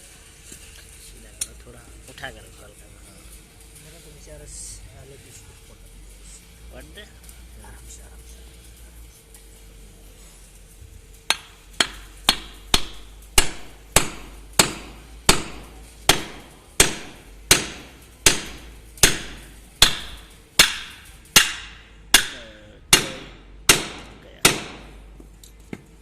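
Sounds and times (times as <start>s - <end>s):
hammer striking steel: 11.3s - 25.2s.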